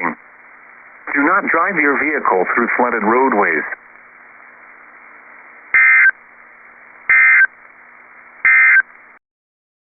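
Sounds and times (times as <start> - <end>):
radio hiss: 0.0 - 9.2
data tone bursts: 5.7 - 6.2, 7.1 - 7.6, 8.4 - 8.9.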